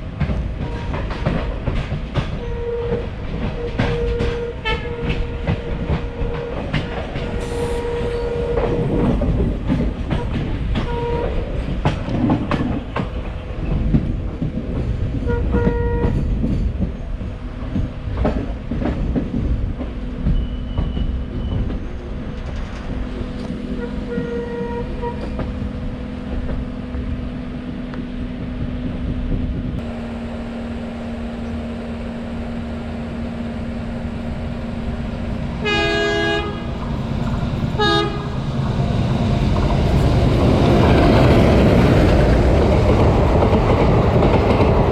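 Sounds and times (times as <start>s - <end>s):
train wheels rumbling and clattering: 0.0s - 44.9s
train horn: 0.6s - 1.4s, 2.3s - 9.3s, 10.1s - 11.5s, 15.2s - 16.3s, 23.7s - 25.5s, 35.6s - 36.9s, 37.7s - 38.6s.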